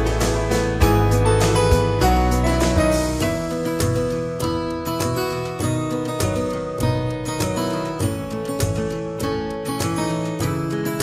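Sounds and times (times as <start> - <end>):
bass line: 0.0 - 4.8
piano notes: 0.0 - 8.8.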